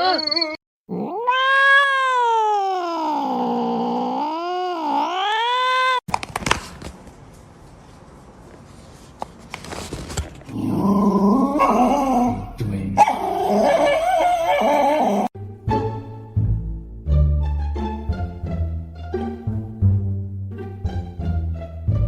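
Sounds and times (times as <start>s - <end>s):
cat yowling: 0.9s - 6.0s, 13.0s - 15.3s
dog whining: 13.0s - 15.3s.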